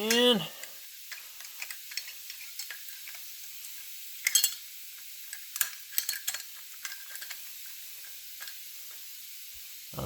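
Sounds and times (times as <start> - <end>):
steady high hiss: 0.0 - 10.0
metal gun parts clicking: 0.1 - 3.2, 4.2 - 4.6, 5.3 - 7.4.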